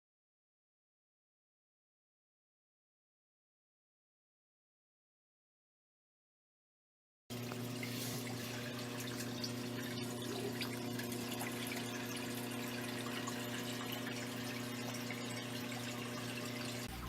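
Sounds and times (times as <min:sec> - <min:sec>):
aquarium pump humming: 0:07.3 - 0:17.0
water trickling and splashing: 0:07.3 - 0:17.0.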